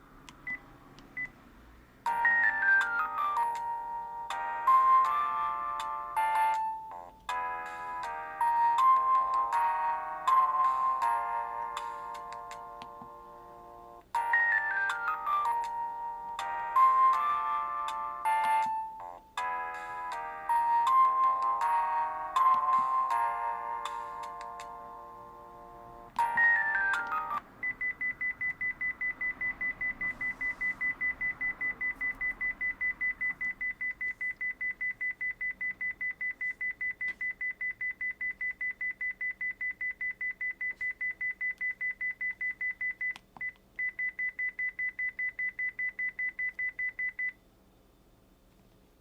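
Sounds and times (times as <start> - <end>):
phone electronic beeps: 26.2 - 47.4.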